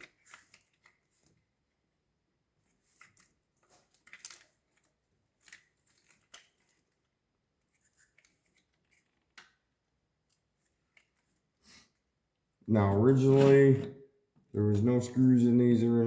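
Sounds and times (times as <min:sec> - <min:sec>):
small parts clicking and scraping: 0:00.0 - 0:01.4, 0:02.6 - 0:11.5.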